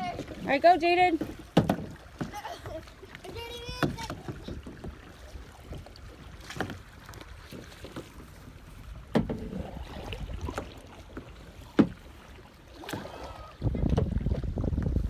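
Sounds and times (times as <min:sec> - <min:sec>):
wind buffeting microphone: 0:08.3 - 0:10.8, 0:13.0 - 0:15.0.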